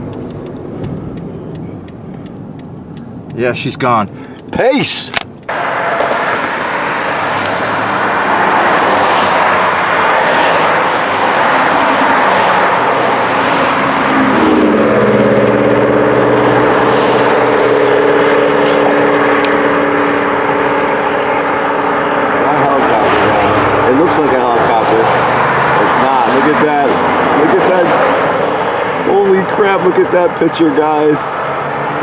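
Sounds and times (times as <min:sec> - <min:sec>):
engine drone: 0:05.5 - 0:30.6.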